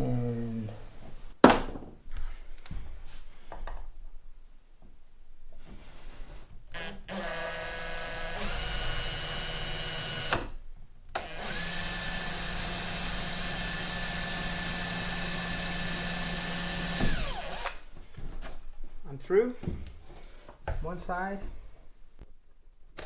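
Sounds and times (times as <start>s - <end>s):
power drill boring into wood: 6.7s - 10.5s, 11.2s - 17.8s.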